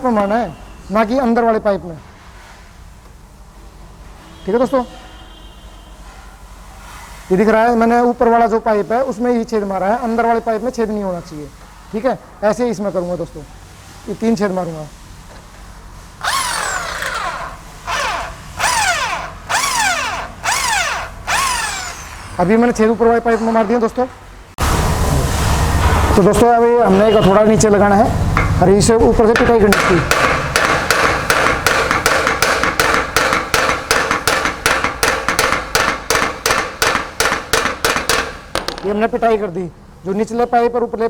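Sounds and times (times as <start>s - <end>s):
electric drill boring metal: 16.2s - 22.5s, 30.1s - 38.3s
hammer striking metal pipe: 28.4s - 28.7s, 29.4s - 38.9s.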